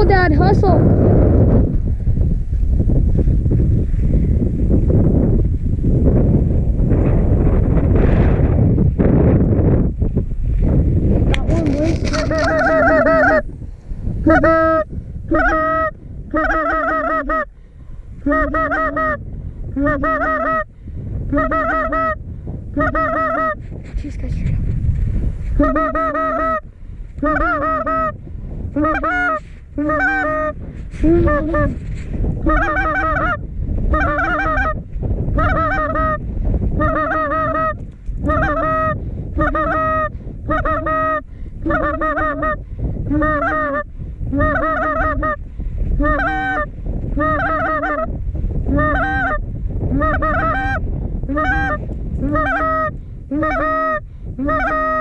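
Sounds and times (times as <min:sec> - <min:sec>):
wind rumbling on microphone: 0:00.0 - 0:55.0
goose honks: 0:11.6 - 0:13.4, 0:14.3 - 0:17.5, 0:18.2 - 0:19.2, 0:19.8 - 0:20.6, 0:21.3 - 0:22.2, 0:25.6 - 0:26.6, 0:28.8 - 0:30.5, 0:32.4 - 0:34.8, 0:36.8 - 0:43.8, 0:46.0 - 0:48.1, 0:48.7 - 0:55.0.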